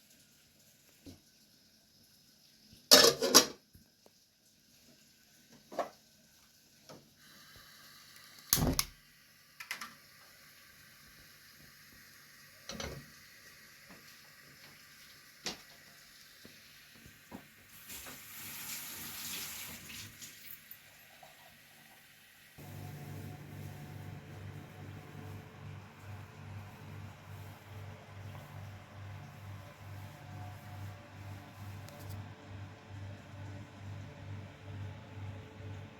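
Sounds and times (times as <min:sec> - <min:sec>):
utensils and dishes clinking: 0:02.9 - 0:03.6.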